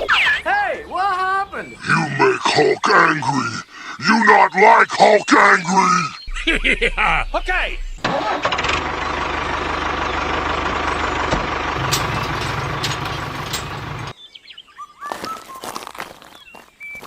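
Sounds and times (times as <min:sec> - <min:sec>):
birds chirping: 0:00.0 - 0:17.0
motor humming: 0:06.3 - 0:14.1.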